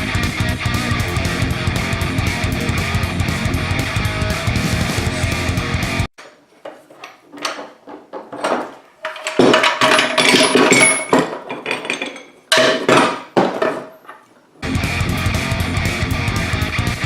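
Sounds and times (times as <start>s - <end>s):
metal knocks and clanking: 6.8s - 13.9s.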